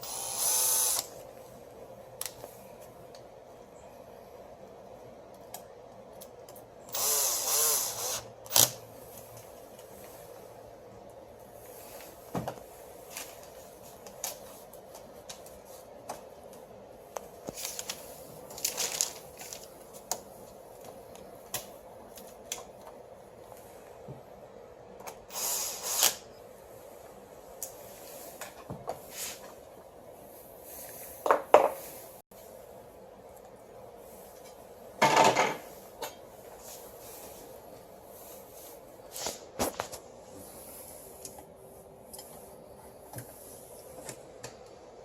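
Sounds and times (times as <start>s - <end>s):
faint steady hum: 0.0s - 45.0s.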